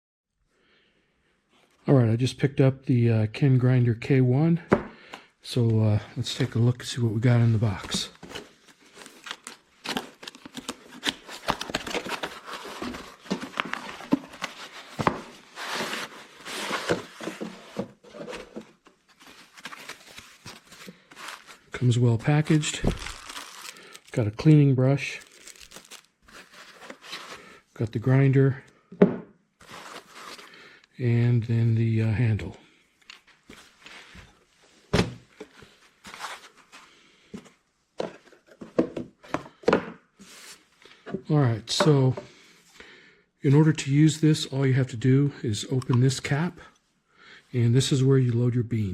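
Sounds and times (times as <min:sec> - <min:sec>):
cardboard packaging rustling: 0:07.2 - 0:27.6, 0:29.6 - 0:30.6, 0:34.9 - 0:38.8.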